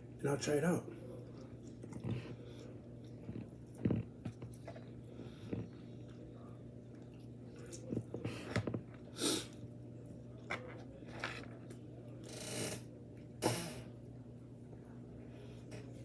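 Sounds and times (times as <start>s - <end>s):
chewing: 1.1s - 12.3s.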